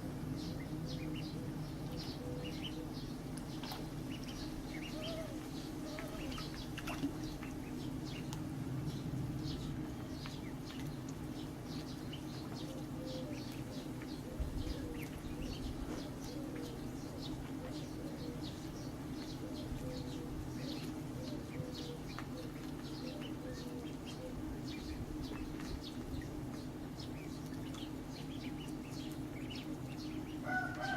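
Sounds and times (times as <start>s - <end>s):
ducklings peeping: 0.0s - 30.9s
steady low hum: 0.0s - 30.9s.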